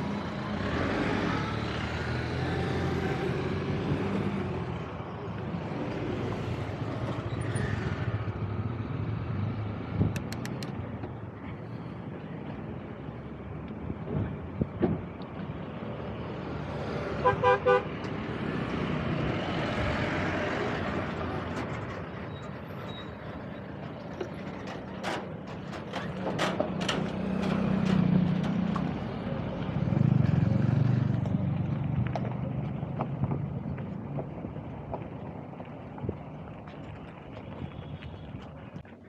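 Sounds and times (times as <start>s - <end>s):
vehicle passing: 0.0s - 10.6s, 15.6s - 21.6s
street traffic: 0.0s - 39.0s.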